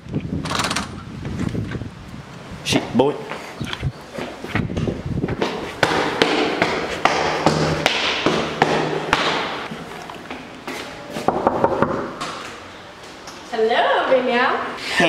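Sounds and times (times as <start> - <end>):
footsteps on hard floor: 4.1 - 13.2.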